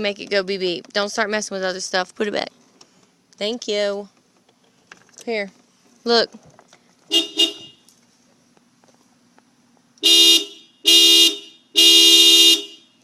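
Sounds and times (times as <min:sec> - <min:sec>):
car horn honking: 0:07.1 - 0:07.9, 0:10.0 - 0:13.0.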